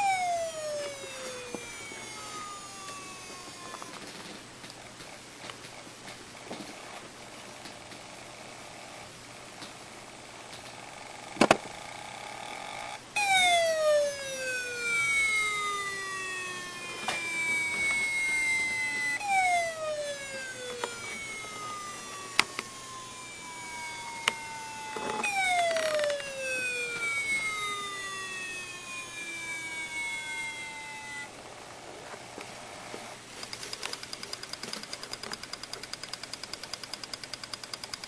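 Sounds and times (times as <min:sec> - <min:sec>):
hard disk drive whining: 0:00.0 - 0:38.0
rapid even ticking: 0:33.4 - 0:38.0
sharp clicks: 0:33.4 - 0:38.0.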